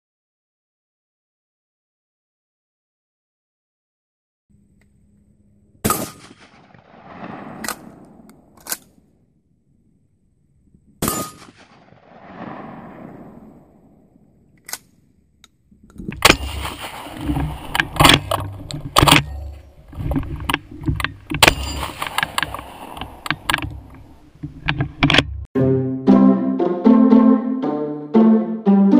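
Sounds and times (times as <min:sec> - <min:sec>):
gun handling knocks and clanks: 0:15.9 - 0:25.4.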